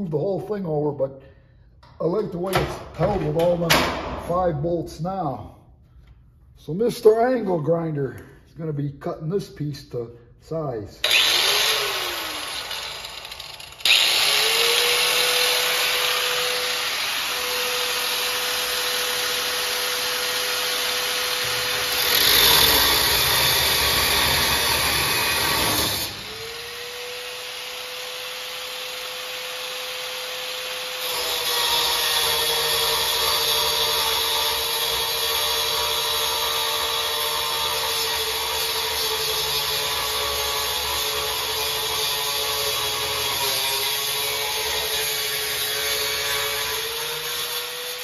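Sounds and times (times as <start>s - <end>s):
angle grinder motor whine: 11.0s - 18.4s
grinder cutting metal: 11.0s - 48.0s.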